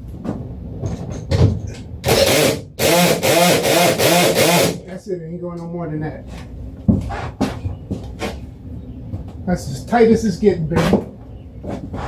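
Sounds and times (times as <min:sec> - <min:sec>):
power driver tightening bolts: 0:02.0 - 0:04.8.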